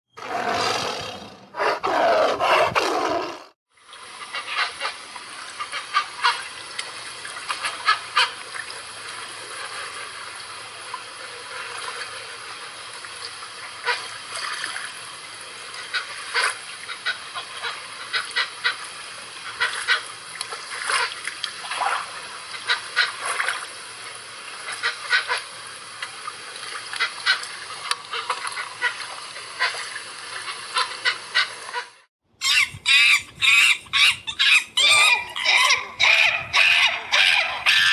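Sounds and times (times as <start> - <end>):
animal calls: 32.4 - 37.9.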